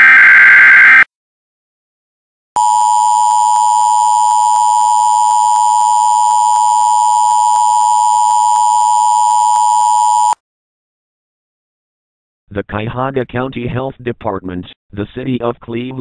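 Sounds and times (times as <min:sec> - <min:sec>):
electronic alarm tone: 0:02.6 - 0:10.4.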